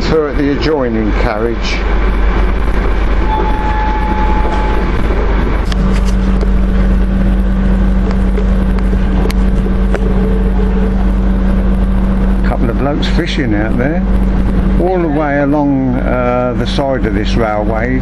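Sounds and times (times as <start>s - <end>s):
low drone: 0.0s - 18.0s
train rumble inside carriage: 0.0s - 18.0s.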